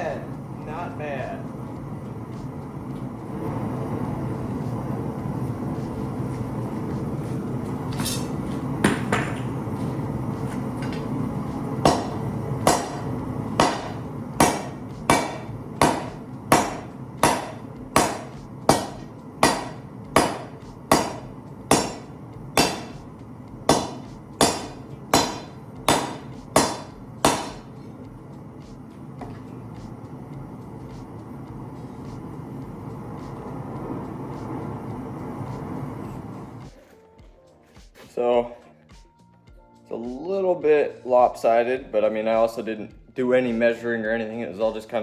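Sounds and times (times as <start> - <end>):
hammer striking metal on anvil: 7.9 - 9.6, 11.8 - 27.9.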